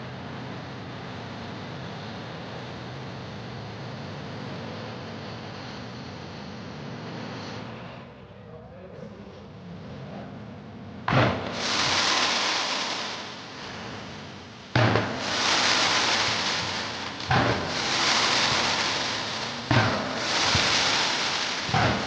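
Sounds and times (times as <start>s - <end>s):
firework bangs: 11.1s - 22.0s
firework crackling hiss: 11.1s - 22.0s.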